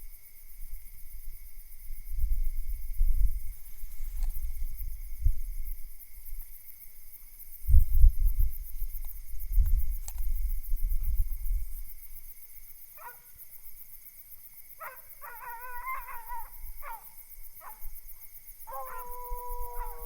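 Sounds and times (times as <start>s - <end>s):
hounds baying: 13.0s - 13.4s, 14.8s - 18.0s, 18.7s - 20.0s.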